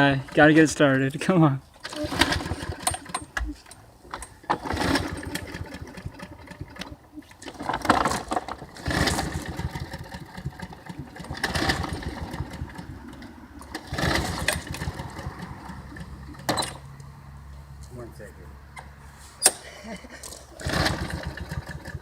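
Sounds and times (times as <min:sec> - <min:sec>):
lawn mower engine cranking: 0:00.0 - 0:17.1, 0:18.7 - 0:22.0
engine sputtering: 0:01.8 - 0:17.1, 0:20.2 - 0:22.0.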